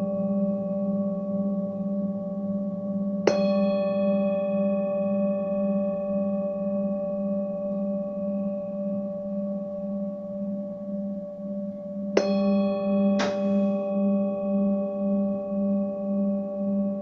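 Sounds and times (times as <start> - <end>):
singing bowls ringing: 0.0 - 17.0
singing bowl struck: 3.2 - 5.8, 12.1 - 16.7.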